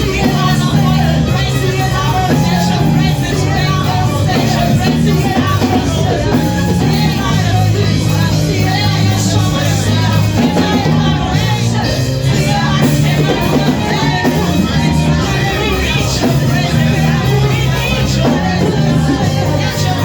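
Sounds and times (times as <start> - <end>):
live band music: 0.0 - 20.0
steady bass line: 0.0 - 20.0
voices singing: 0.0 - 20.0.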